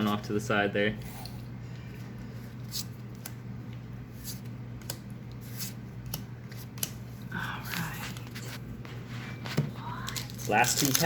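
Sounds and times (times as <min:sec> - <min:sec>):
low steady hum: 0:00.0 - 0:11.0
cards rustling and clicking: 0:02.6 - 0:08.6, 0:10.0 - 0:11.0.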